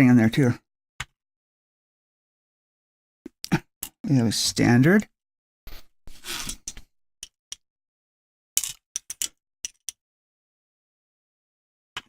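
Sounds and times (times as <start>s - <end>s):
lock pins clicking: 8.6s - 10.0s.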